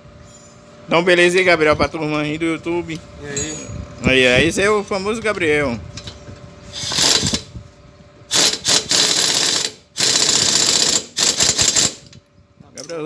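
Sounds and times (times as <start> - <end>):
power tool running: 6.7 - 7.5, 8.3 - 12.1.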